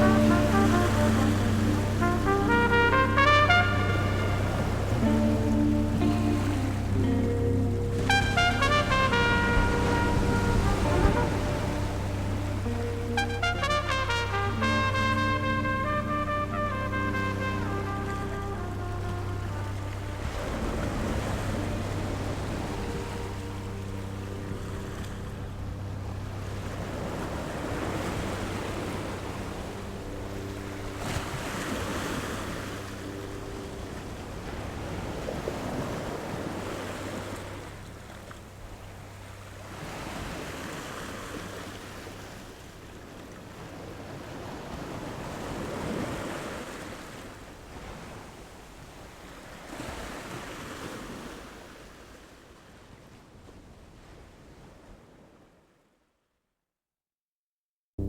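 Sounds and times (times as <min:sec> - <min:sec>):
low steady hum: 0:00.0 - 0:40.5
ocean waves breaking on shore: 0:00.0 - 0:55.9.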